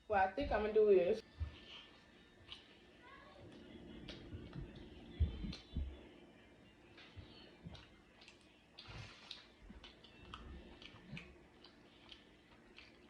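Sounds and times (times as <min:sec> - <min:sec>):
chewing soft biscuit: 0:01.2 - 0:02.8, 0:06.9 - 0:13.0
wet mouth clicks and smacks: 0:02.4 - 0:02.7, 0:07.7 - 0:13.0.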